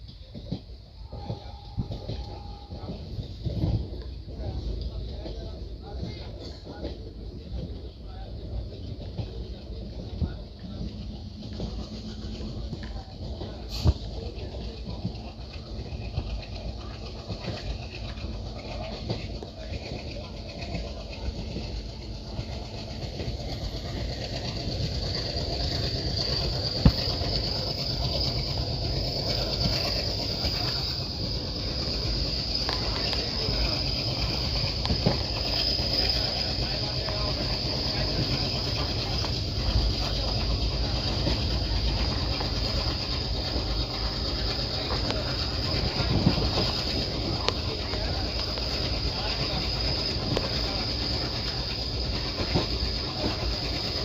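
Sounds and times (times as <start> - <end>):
train wheels rumbling on rails: 0.0 - 54.0
insects chirring: 20.8 - 54.0.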